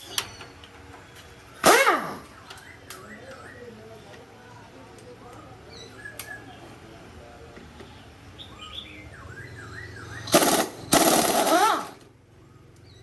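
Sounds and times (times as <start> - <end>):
small birds chirping: 2.2 - 11.2, 12.1 - 13.0
loud rattling noise: 10.3 - 12.1.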